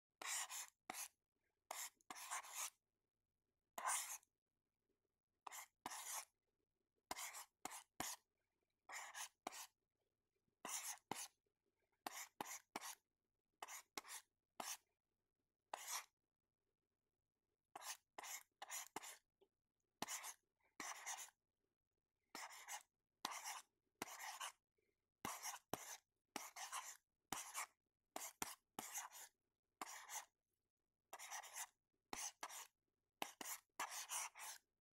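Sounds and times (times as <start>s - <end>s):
pen scratching on paper: 0.2s - 2.8s, 3.8s - 4.3s, 5.4s - 6.3s, 7.1s - 8.2s, 8.9s - 9.8s, 10.6s - 11.4s, 12.0s - 13.0s, 13.6s - 14.8s, 15.7s - 16.1s, 17.8s - 19.3s, 20.0s - 21.4s, 22.3s - 24.6s, 25.2s - 30.4s, 31.1s - 34.7s.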